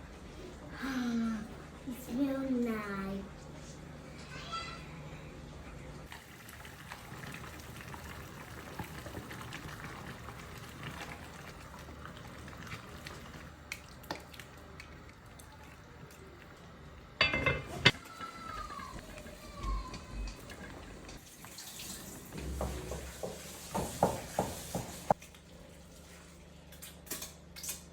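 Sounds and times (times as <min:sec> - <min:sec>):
food bubbling and hissing on stove: 0:06.0 - 0:26.5
cookware clattering: 0:17.2 - 0:18.3.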